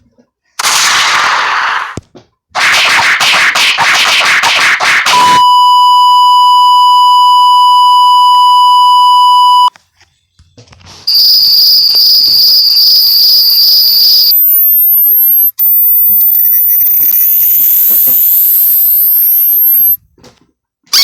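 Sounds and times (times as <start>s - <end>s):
sharp noisy bursts: 0.6s - 2.0s, 13.7s - 20.0s
steady beep: 5.2s - 9.7s, 11.1s - 20.0s
high steady whine: 14.1s - 20.0s.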